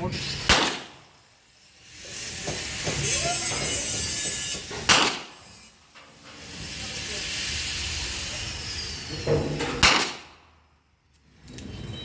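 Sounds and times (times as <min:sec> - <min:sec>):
revolver gunshot: 0:00.4 - 0:01.1, 0:04.9 - 0:05.4, 0:09.8 - 0:10.4.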